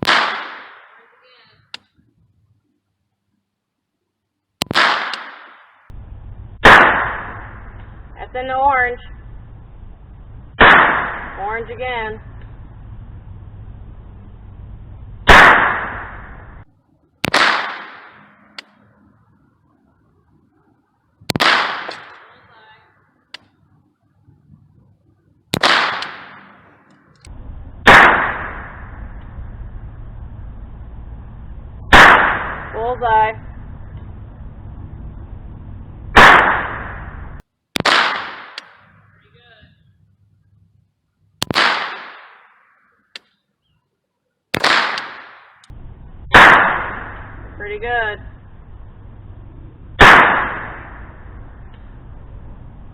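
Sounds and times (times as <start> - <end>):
gunshots with echoing tail: 0.0 - 1.1, 4.6 - 6.0, 6.6 - 8.2, 10.6 - 11.7, 15.2 - 18.8, 21.3 - 22.4, 25.5 - 29.8, 31.3 - 34.0, 36.1 - 39.1, 41.4 - 42.7, 44.5 - 47.8, 50.0 - 52.0
low steady rumble: 5.9 - 37.7, 38.7 - 41.7, 44.6 - 52.9.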